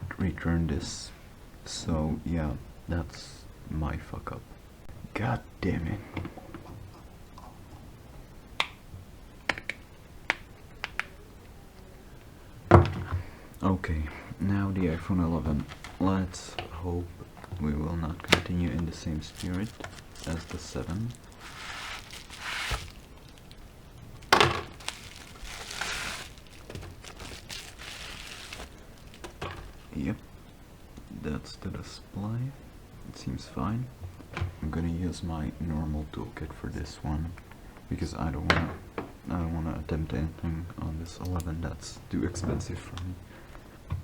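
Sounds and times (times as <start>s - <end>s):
packaging rustle: 15.4s - 16.5s, 17.5s - 30.0s
packaging sharp clack: 18.2s - 23.6s, 24.2s - 29.6s.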